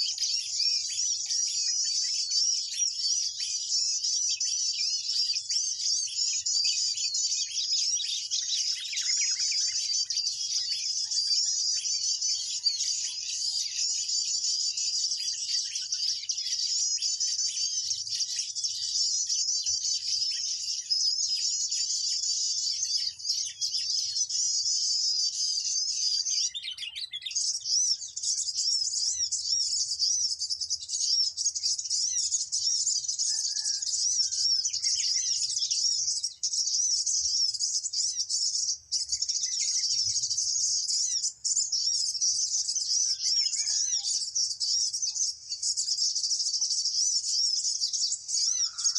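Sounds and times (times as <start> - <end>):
songbirds chirping: 0.0 - 48.9.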